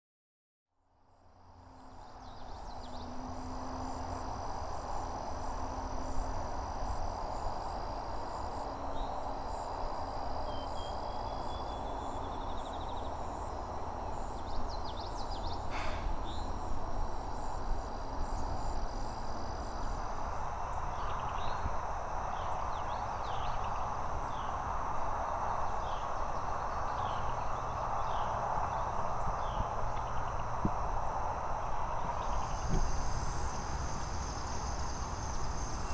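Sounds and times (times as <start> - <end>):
insects trilling: 1.7 - 35.9
background hiss: 1.8 - 35.9.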